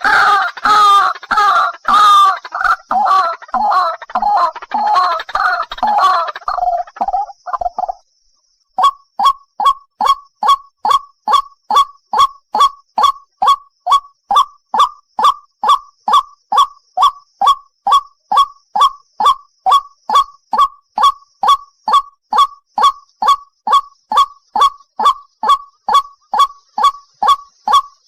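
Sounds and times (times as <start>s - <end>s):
bird honking call: 0.0s - 6.9s.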